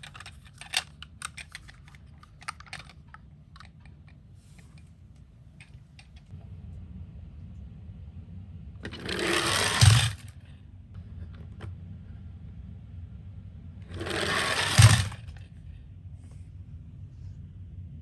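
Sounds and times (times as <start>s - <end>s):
toy car wheels whirring rattle: 0.0s - 3.0s, 8.8s - 10.4s, 13.9s - 15.4s
toy car thump: 8.8s - 10.3s, 13.9s - 15.4s.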